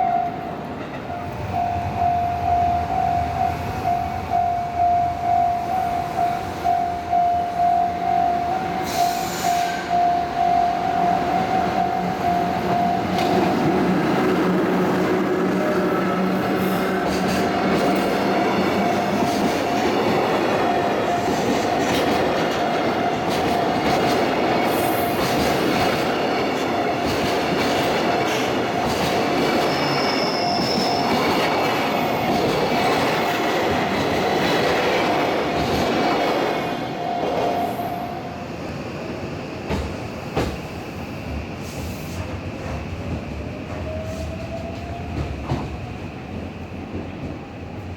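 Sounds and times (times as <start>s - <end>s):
train wheels rumbling on rails: 0.0s - 47.9s
high wheel squeals: 29.5s - 31.3s.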